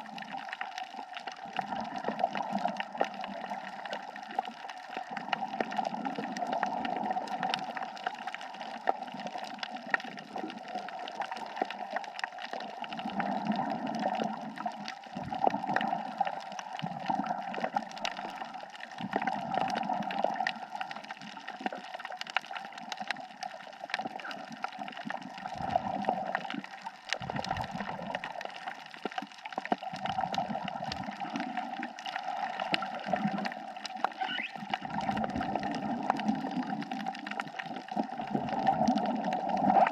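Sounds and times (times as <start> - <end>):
crackle of small clicks: 0.0 - 39.9
exhaled bubbles gurgling: 0.0 - 39.9.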